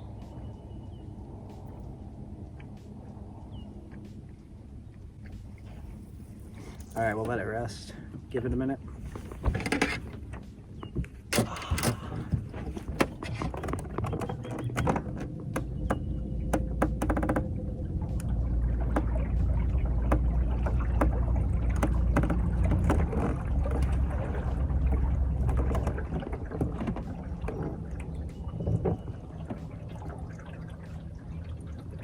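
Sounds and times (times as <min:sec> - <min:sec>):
boat engine rumble: 0:00.0 - 0:32.0
knocks against hull: 0:09.2 - 0:17.5, 0:18.8 - 0:24.2, 0:24.9 - 0:27.8.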